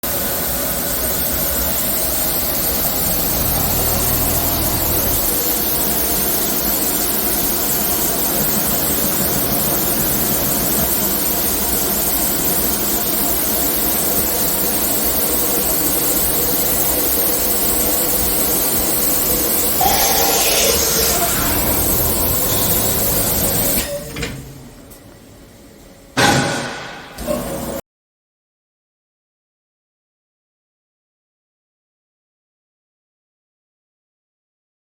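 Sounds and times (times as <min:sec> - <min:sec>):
machine whirring: 0:00.1 - 0:24.8
faint hum: 0:19.8 - 0:26.2.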